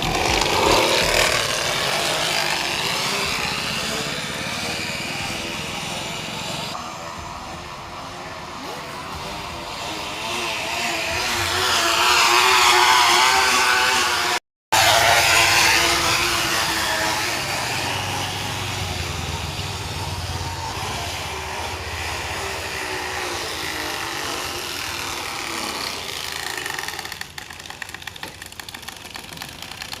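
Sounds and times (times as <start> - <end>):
bottle rattling on bicycle spokes: 26.7 - 30.0.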